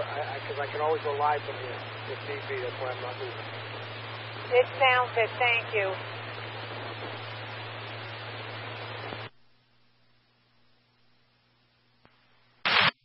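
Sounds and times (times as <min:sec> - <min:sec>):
radio scanner hiss: 0:00.0 - 0:09.3, 0:12.0 - 0:13.0
steady low hum: 0:00.0 - 0:13.0.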